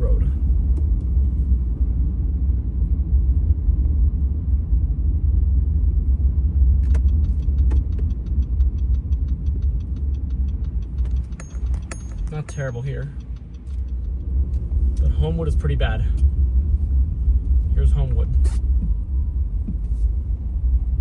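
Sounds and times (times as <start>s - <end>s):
car cabin rumble: 0.0s - 21.0s
turn signal clicking: 6.8s - 15.2s.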